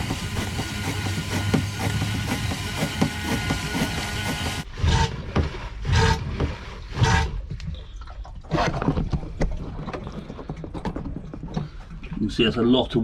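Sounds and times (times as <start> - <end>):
water gushing from hand pump: 0.0 - 4.7.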